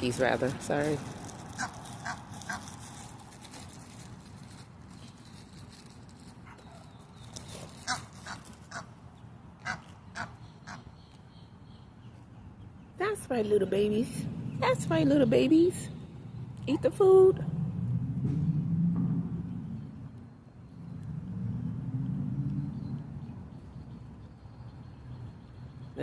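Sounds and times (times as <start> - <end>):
ducks calling: 1.5 - 2.8, 7.8 - 9.0, 9.6 - 11.1.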